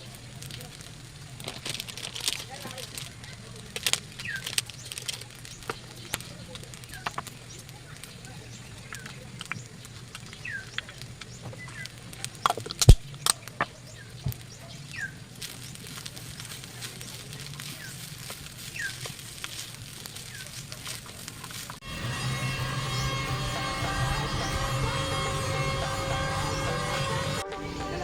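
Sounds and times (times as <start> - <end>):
bird chirping: 4.0 - 18.0.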